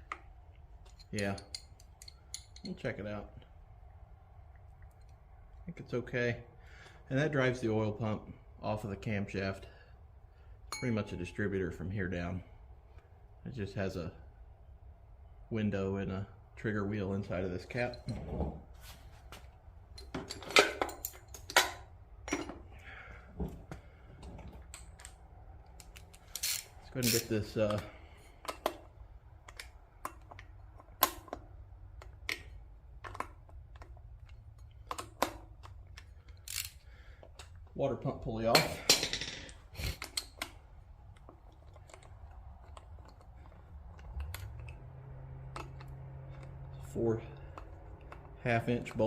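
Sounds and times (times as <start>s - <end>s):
metal tools clinking: 0.8s - 2.8s, 19.9s - 22.7s.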